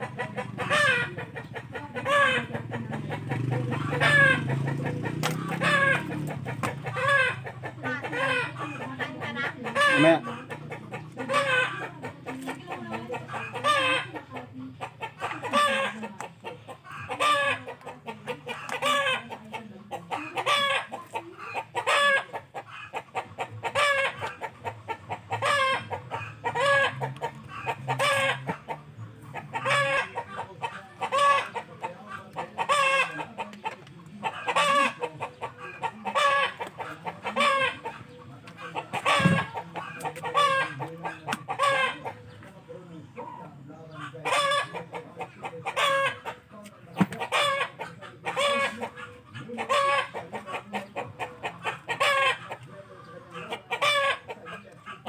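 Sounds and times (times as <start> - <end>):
animal calling: 0.0 - 42.2.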